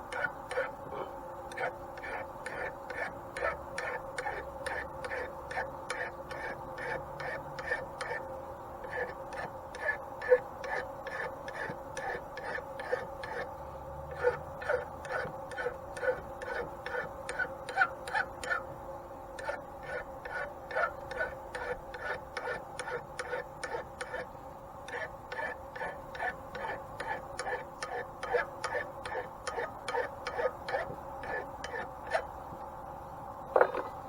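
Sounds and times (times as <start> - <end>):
steady low hum: 0.0 - 34.0.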